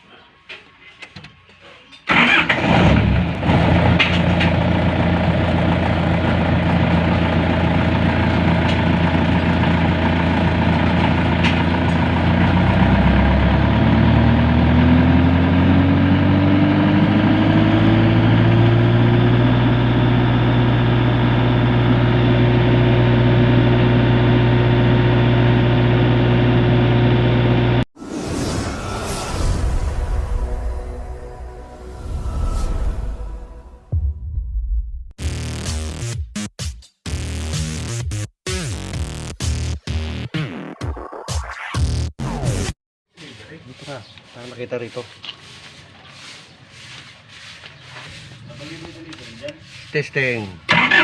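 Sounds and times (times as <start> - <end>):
generator engine running: 2.1 - 27.9, 50.6 - 51.0.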